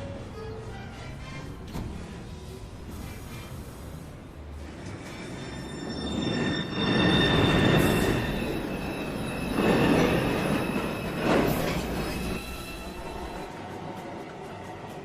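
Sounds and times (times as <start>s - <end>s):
subway train wheels rumbling: 0.0s - 15.0s
high-pitched wheel squeal: 5.1s - 13.5s.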